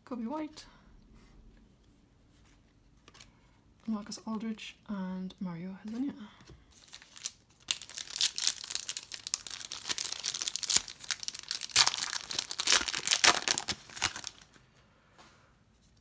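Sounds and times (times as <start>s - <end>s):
plastic wrapper crinkling: 6.8s - 14.7s.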